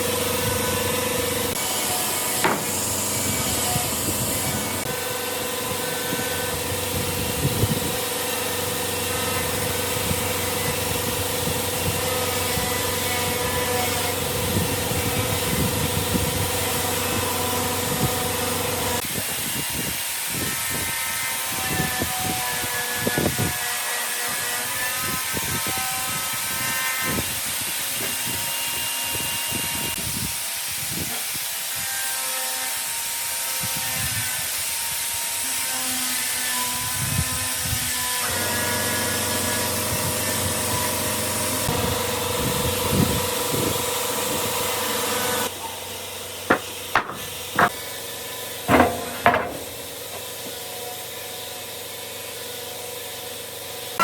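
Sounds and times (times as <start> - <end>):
woodworking power tool running: 0.0 - 19.1, 34.5 - 54.0
sharp knocks: 2.4 - 2.9, 46.5 - 47.8, 48.7 - 50.6.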